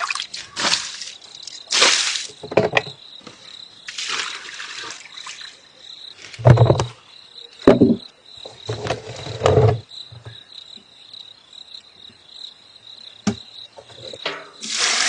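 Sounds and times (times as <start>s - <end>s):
cricket chirring: 0.0s - 15.0s
dull thumps and knocks: 2.4s - 3.0s, 6.4s - 7.0s, 7.6s - 10.4s, 13.2s - 14.4s.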